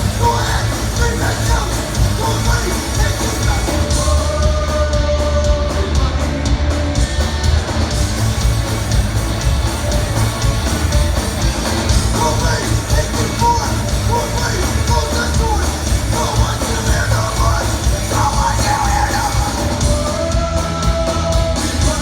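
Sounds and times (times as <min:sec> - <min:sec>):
person singing: 0:00.0 - 0:06.6, 0:12.0 - 0:22.0
rock band playing: 0:00.0 - 0:22.0.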